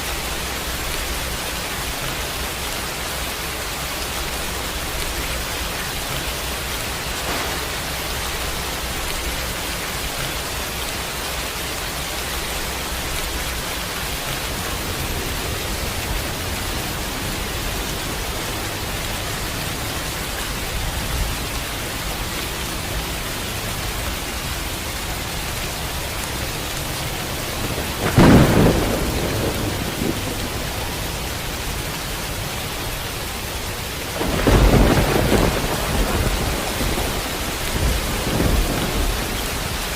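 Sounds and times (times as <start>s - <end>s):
steady rain falling: 0.0s - 39.9s
thunder rumbling: 4.2s - 10.7s, 26.8s - 33.2s, 33.9s - 39.9s.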